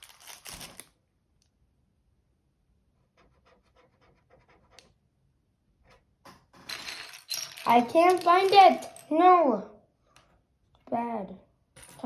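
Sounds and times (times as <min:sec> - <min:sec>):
plastic pieces clicking: 0:06.6 - 0:09.1.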